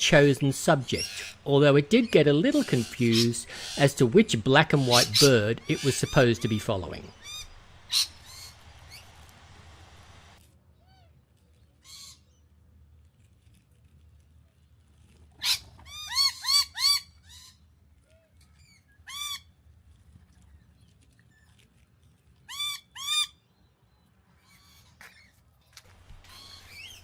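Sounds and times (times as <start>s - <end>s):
bird calling harsh notes: 0.0s - 10.4s, 26.0s - 27.0s.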